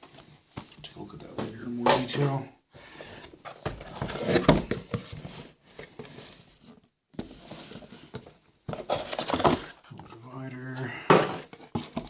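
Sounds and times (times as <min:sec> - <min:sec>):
paper and cardboard rustling: 0:03.0 - 0:12.0.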